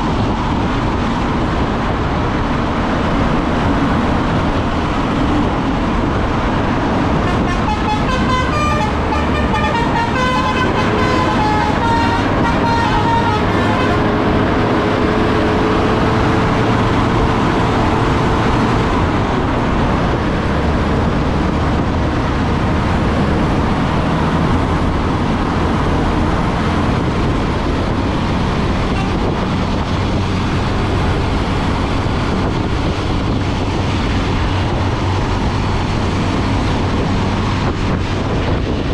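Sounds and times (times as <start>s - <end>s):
bus running noise: 0.0s - 38.9s
bus musical horn playing a tune: 7.2s - 14.8s, 28.8s - 29.4s.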